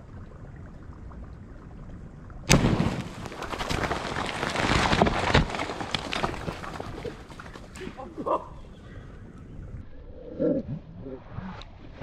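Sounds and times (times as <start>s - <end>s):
explosive blast: 2.5s - 3.2s
debris spattering and crackling: 2.5s - 8.2s.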